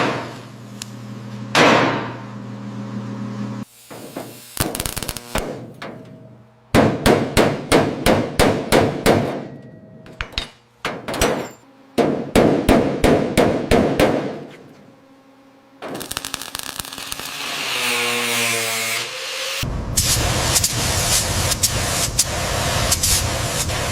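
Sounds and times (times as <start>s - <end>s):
hammer clanging on metal: 5.6s - 12.5s
steady hiss: 19.6s - 23.9s.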